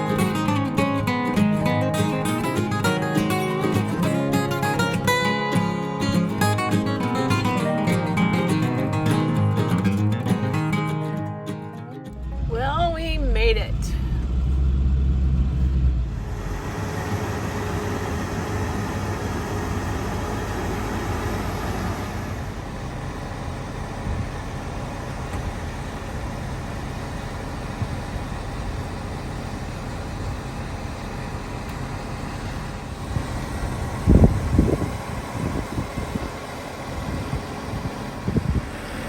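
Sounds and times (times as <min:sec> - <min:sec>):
vehicle road noise from inside: 0:12.1 - 0:39.0.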